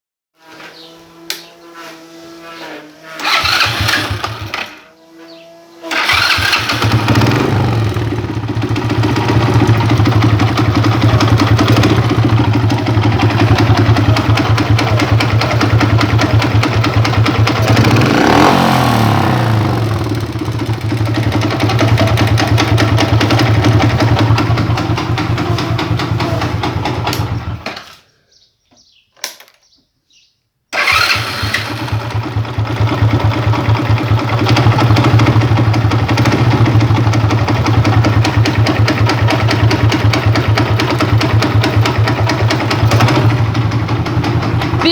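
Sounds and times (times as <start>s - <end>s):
moped engine revving: 0.4s - 28.0s, 30.7s - 44.9s
moped engine knocking: 6.0s - 27.6s, 31.8s - 44.9s.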